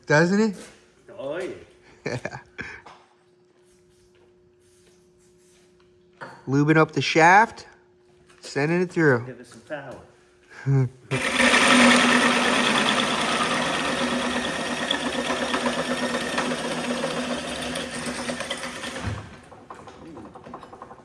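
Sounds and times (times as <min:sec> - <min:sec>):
power drill cutting through steel: 0:11.1 - 0:19.4.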